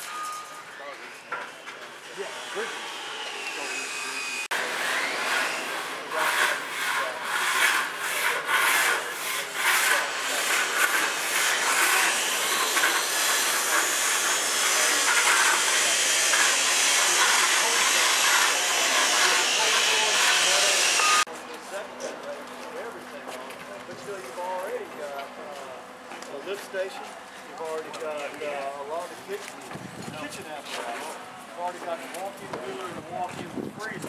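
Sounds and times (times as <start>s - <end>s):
rhythmic rasping strokes: 2.2s - 21.3s.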